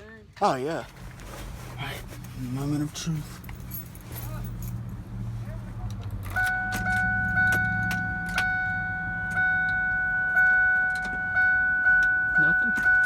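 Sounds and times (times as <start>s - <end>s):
low engine hum: 0.2s - 13.0s
ignition key clicks: 6.2s - 8.7s, 9.3s - 13.0s
dashboard warning chime: 6.3s - 13.0s.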